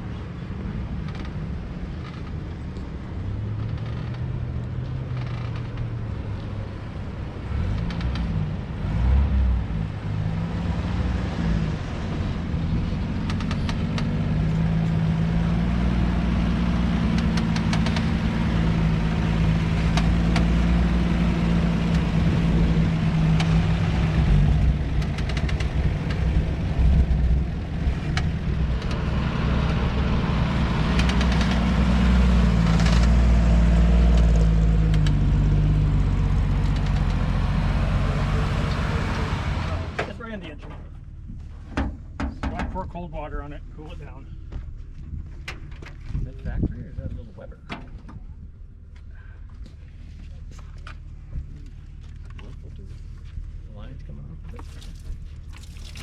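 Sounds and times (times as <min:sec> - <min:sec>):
engine running at low speed: 0:00.0 - 0:56.0
sharp clicks and knocks: 0:07.7 - 0:08.4, 0:12.6 - 0:14.9, 0:17.1 - 0:18.3, 0:19.8 - 0:20.6, 0:24.6 - 0:27.3, 0:28.0 - 0:29.2, 0:30.8 - 0:31.9, 0:32.6 - 0:33.3, 0:34.1 - 0:35.2, 0:36.6 - 0:37.3, 0:41.7 - 0:42.9.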